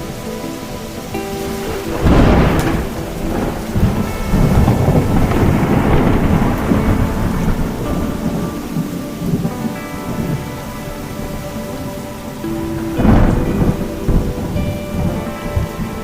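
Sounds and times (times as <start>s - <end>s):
steady rain: 0.0s - 16.0s
thunder crack and rumble: 1.2s - 16.0s.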